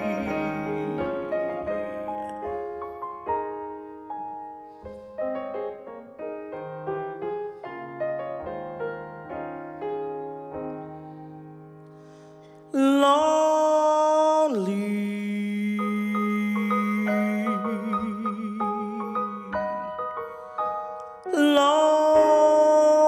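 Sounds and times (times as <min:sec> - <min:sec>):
person singing long held note: 0:00.0 - 0:02.4, 0:12.7 - 0:19.7, 0:21.2 - 0:23.0
solo piano chords: 0:00.0 - 0:23.0.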